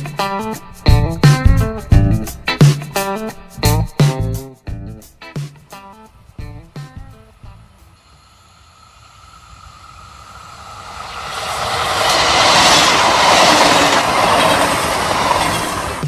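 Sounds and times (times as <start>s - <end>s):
train passing close by: 5.7s - 16.0s.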